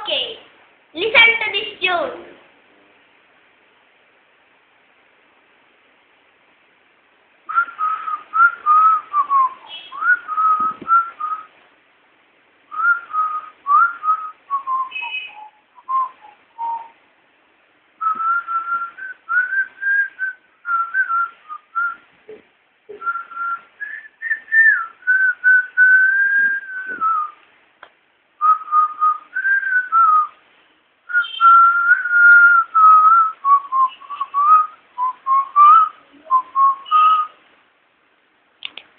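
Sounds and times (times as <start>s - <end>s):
person whistling a tune: 7.5s - 11.5s, 18.0s - 22.0s, 22.9s - 27.4s, 28.4s - 30.3s, 31.1s - 37.4s.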